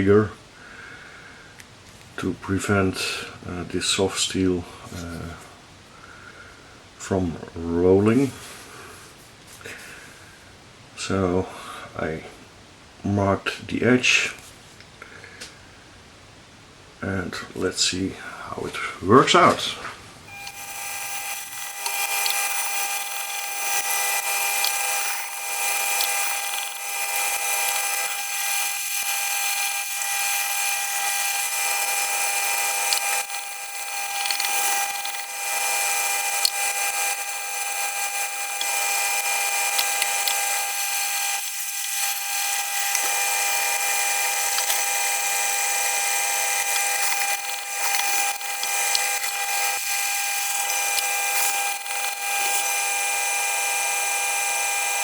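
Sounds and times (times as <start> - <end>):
knife blade grinding hiss: 20.3 - 52.8
sharpening machine motor hum: 20.3 - 55.0.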